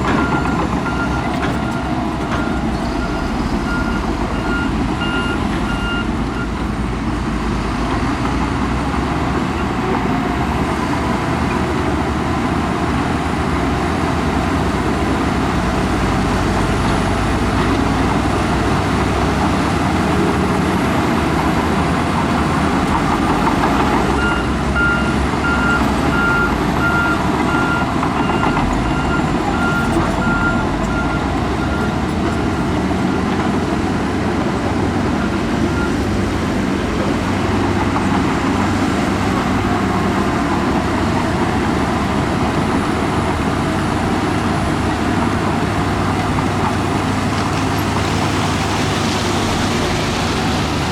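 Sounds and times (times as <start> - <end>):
heavy machinery running: 0.0 - 50.9
reversing alarm beeping: 0.1 - 6.6, 24.1 - 32.4, 35.2 - 36.2.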